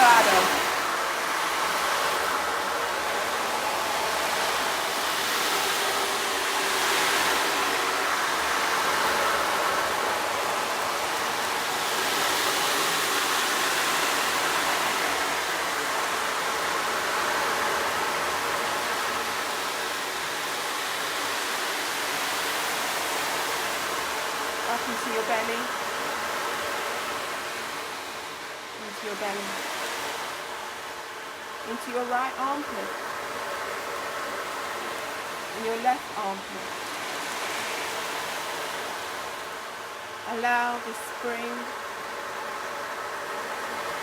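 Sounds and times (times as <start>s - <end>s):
flowing stream water: 0.0s - 44.0s.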